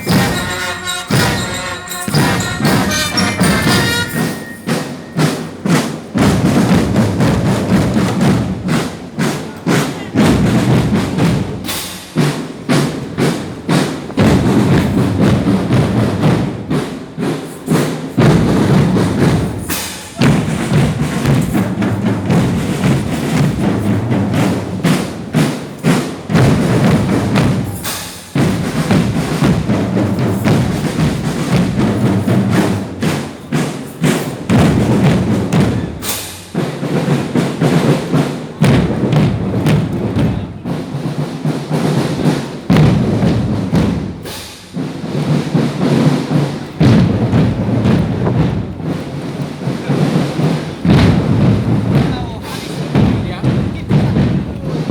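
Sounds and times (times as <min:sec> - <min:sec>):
wood block strikes: 0:00.0 - 0:05.4
percussion music: 0:00.0 - 0:54.9.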